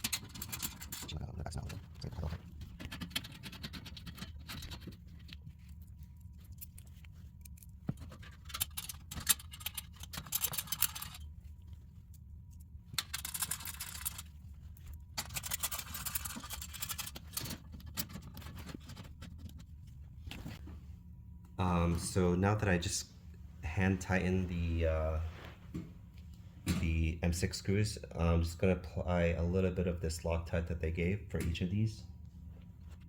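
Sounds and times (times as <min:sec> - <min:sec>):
small metal parts clinking: 0:07.4 - 0:11.3, 0:12.9 - 0:14.3, 0:15.2 - 0:18.5.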